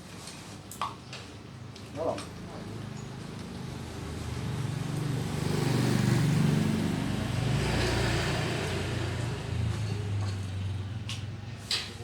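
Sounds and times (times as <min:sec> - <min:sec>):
vehicle engine passing: 0:03.6 - 0:11.1.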